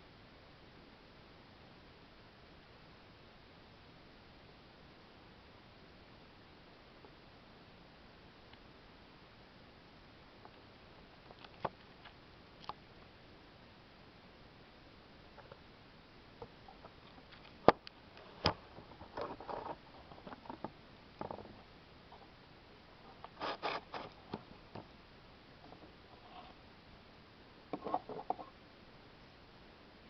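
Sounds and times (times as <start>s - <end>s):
insect crunching and crackling: 11.2s - 12.8s.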